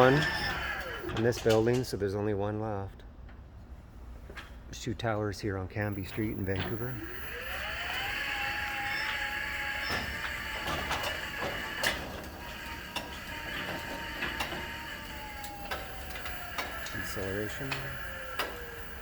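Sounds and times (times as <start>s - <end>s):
gate motor whine: 0.0s - 1.9s, 5.9s - 19.0s.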